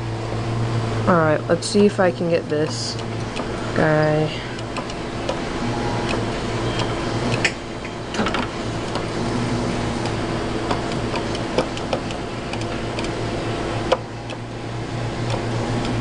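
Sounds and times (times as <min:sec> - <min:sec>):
claw machine motor hum: 0:00.0 - 0:16.0
claw clicks and ticks: 0:02.4 - 0:03.5, 0:04.6 - 0:05.4, 0:10.0 - 0:13.2, 0:13.9 - 0:14.4.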